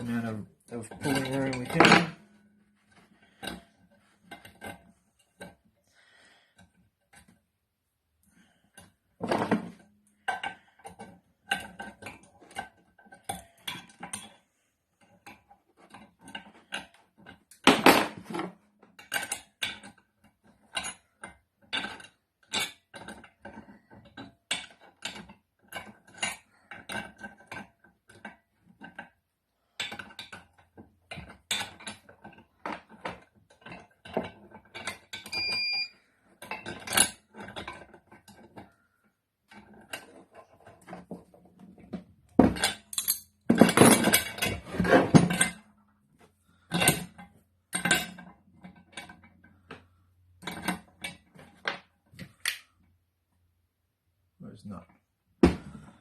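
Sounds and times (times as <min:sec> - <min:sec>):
hand tools clinking on metal: 0:00.0 - 0:02.2, 0:42.6 - 0:44.6
short beep: 0:35.4 - 0:35.9.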